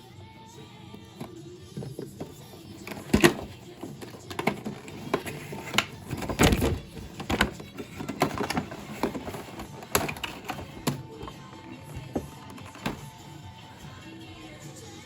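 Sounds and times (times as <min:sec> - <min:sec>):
packaging box scraping and clicking: 0:01.2 - 0:13.1.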